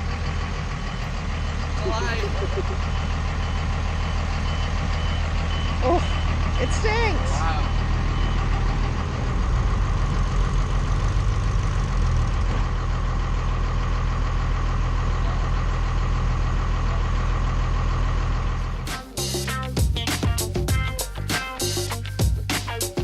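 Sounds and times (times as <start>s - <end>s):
vehicle engine idling: 0.0s - 23.0s
background music: 18.8s - 23.0s.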